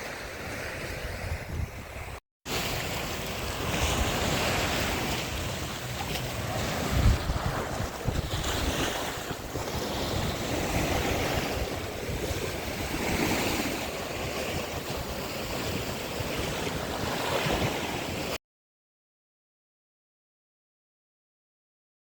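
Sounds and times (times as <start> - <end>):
wind buffeting microphone: 0.4 - 2.2, 3.2 - 18.4
sea waves washing onto beach: 2.5 - 18.4.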